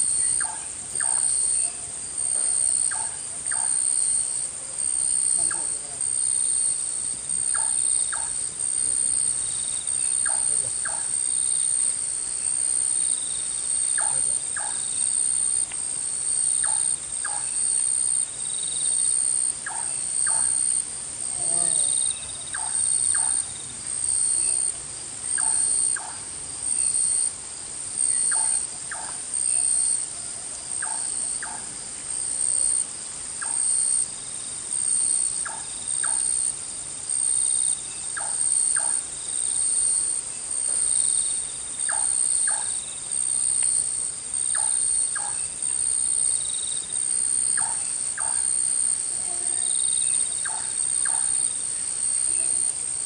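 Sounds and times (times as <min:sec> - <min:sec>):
high shrill insect trill: 0:00.0 - 0:53.0
short lower insect calls: 0:00.0 - 0:53.0.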